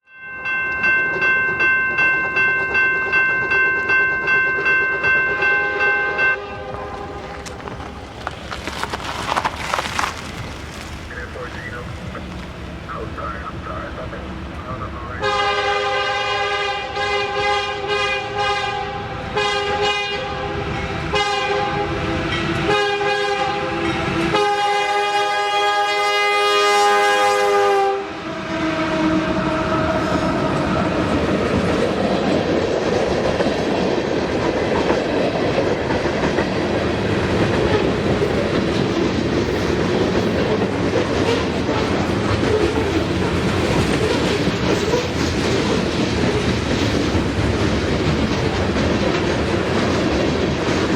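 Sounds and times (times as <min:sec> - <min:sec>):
train cars rumbling on rails: 0:00.6 - 0:50.9
locomotive horn blasts: 0:05.3 - 0:07.4, 0:15.2 - 0:30.1.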